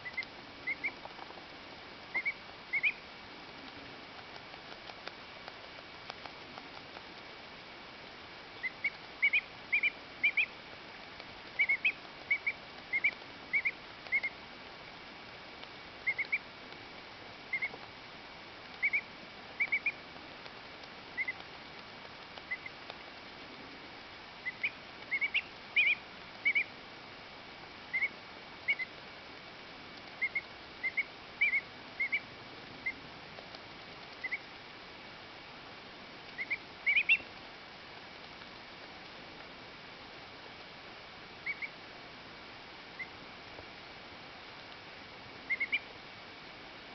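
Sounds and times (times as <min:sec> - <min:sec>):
duckling peeping: 0:00.0 - 0:01.1, 0:02.1 - 0:03.0, 0:08.5 - 0:10.6, 0:11.6 - 0:14.4, 0:16.0 - 0:16.5, 0:17.5 - 0:17.8, 0:18.7 - 0:20.0, 0:21.1 - 0:21.4, 0:22.4 - 0:22.8, 0:24.4 - 0:26.7, 0:27.9 - 0:29.0, 0:30.1 - 0:33.0, 0:34.1 - 0:34.5, 0:36.3 - 0:37.3, 0:41.4 - 0:41.8, 0:43.0 - 0:43.2, 0:45.5 - 0:45.9.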